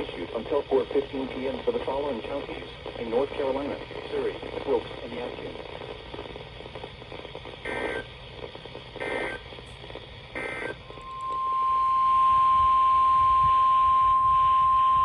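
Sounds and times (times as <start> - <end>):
radio hiss: 0.0 - 11.8
steady warning tone: 9.0 - 15.0.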